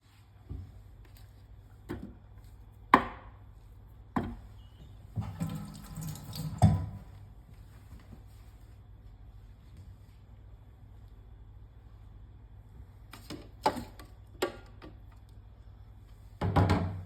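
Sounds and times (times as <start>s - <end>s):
kitchen knocks and clatter: 16.4s - 17.0s.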